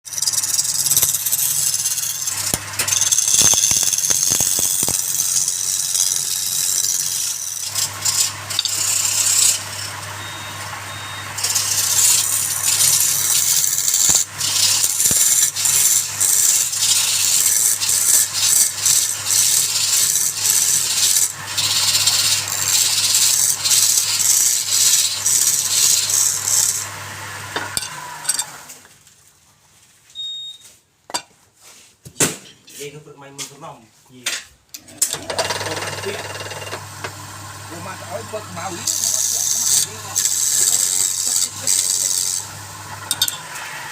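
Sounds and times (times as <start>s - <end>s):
tool scraping spinning wood: 0.0s - 28.9s, 34.8s - 43.9s
wood lathe motor hum: 0.1s - 28.8s, 35.0s - 43.9s.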